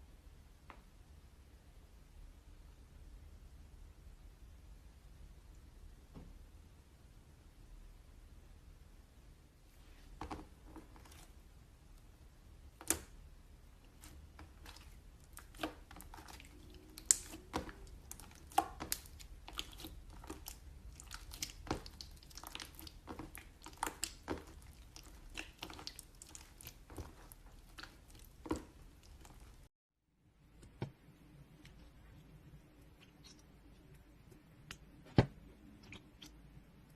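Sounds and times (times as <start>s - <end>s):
slime squishing sticky clicks: 14.0s - 29.4s.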